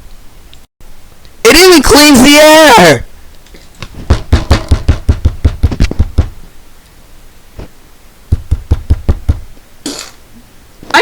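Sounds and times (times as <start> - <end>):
rapid sharp knocks: 4.0 - 6.4, 8.3 - 9.5.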